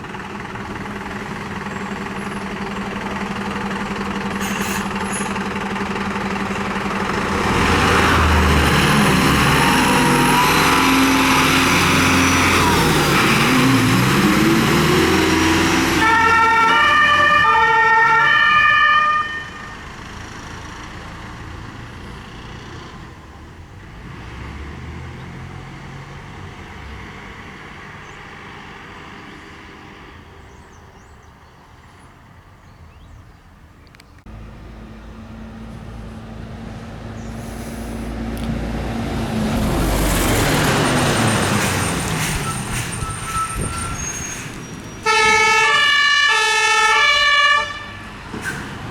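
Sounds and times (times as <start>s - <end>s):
fire engine revving: 0.0s - 30.1s, 34.3s - 48.9s
two-tone siren: 16.0s - 19.8s, 45.0s - 48.1s.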